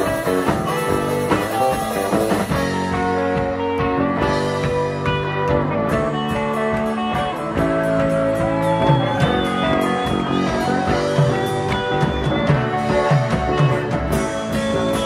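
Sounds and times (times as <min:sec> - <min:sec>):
bass guitar: 0:00.0 - 0:15.0
electric guitar with bending notes: 0:00.0 - 0:15.0
steady drum beat: 0:00.0 - 0:15.0.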